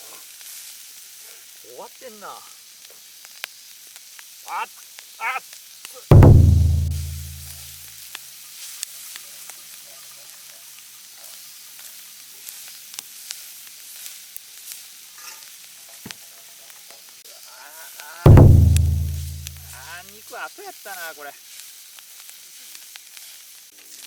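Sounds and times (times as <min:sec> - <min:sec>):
food sizzling in a pan: 0:00.0 - 0:06.2, 0:07.8 - 0:18.7, 0:19.7 - 0:24.0
loud deep boom: 0:06.1 - 0:07.5, 0:18.3 - 0:19.8.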